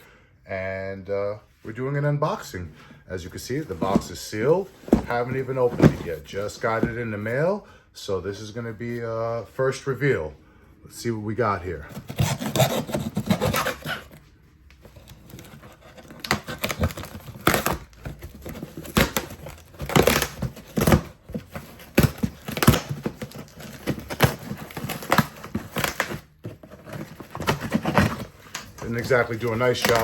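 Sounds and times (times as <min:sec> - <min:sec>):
cardboard box tearing: 0:11.9 - 0:14.2, 0:14.9 - 0:30.0.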